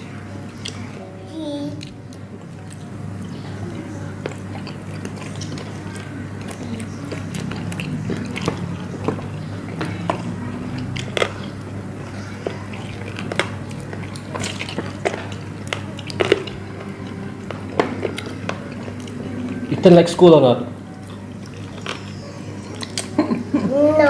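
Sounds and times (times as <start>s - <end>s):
steady low hum: 0.0s - 24.0s
biting and chewing: 4.1s - 19.9s, 20.9s - 23.2s.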